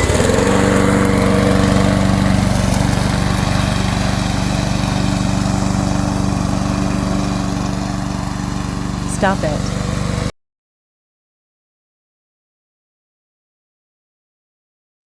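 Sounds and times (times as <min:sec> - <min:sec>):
small gasoline engine running: 0:00.0 - 0:10.3.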